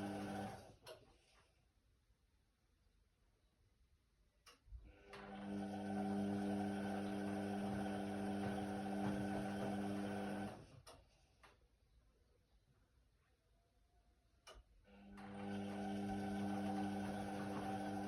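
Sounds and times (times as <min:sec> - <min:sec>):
washing machine motor humming: 0:00.0 - 0:00.7, 0:05.0 - 0:10.7, 0:14.9 - 0:18.0.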